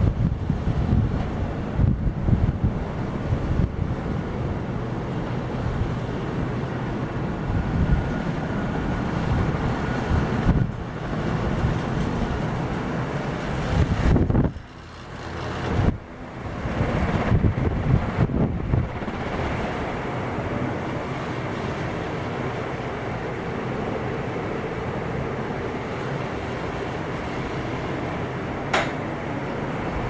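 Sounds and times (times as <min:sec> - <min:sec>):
ceiling fans rushing air: 0:00.0 - 0:30.0
wind buffeting microphone: 0:00.0 - 0:30.0.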